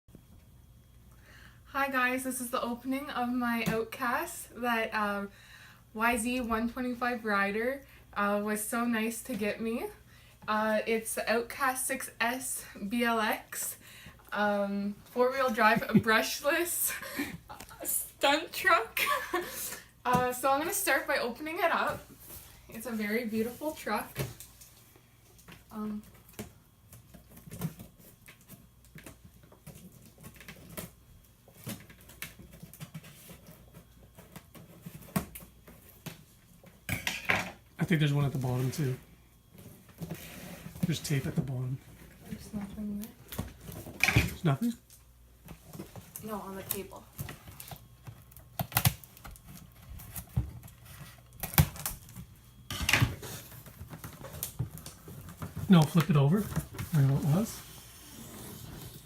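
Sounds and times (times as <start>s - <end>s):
cardboard scraping rustle: 21.9s - 24.5s, 39.6s - 42.6s, 53.1s - 59.0s.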